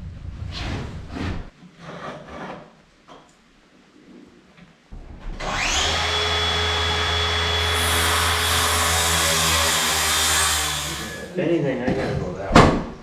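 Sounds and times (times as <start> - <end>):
electric saw whine: 5.2 - 11.4.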